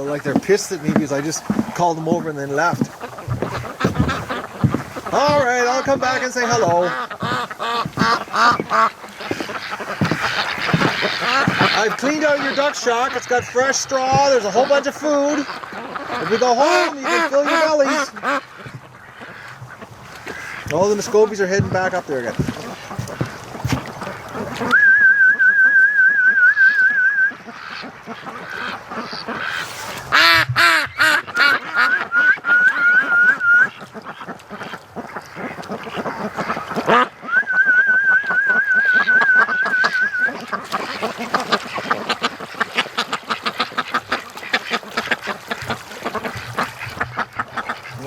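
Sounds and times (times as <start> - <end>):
ducks quacking: 0.0 - 48.0
warbling duck call whistle: 24.7 - 27.4, 29.5 - 33.8, 36.9 - 40.5.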